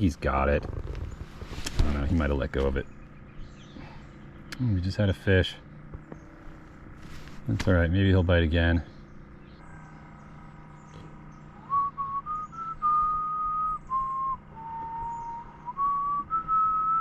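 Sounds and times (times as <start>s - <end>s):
person whistling a tune: 11.6s - 17.0s.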